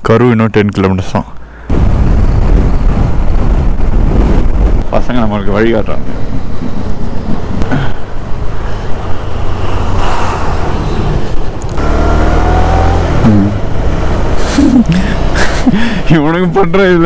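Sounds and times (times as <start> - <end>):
wind rushing over microphone: 1.7 - 16.1
motorcycle running on road: 6.3 - 16.4.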